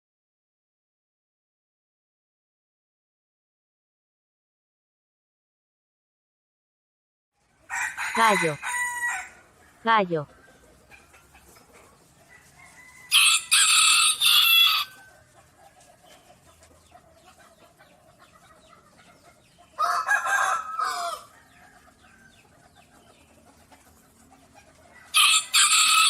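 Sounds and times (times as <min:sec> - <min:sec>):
rooster crowing: 0:07.7 - 0:10.6, 0:12.2 - 0:15.3, 0:19.8 - 0:22.4, 0:25.0 - 0:26.0.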